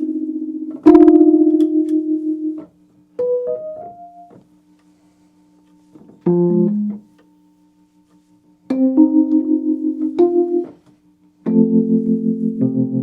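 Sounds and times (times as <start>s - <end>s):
electric piano with tremolo: 0.0s - 2.6s, 3.2s - 4.3s, 8.7s - 10.7s, 11.5s - 13.0s.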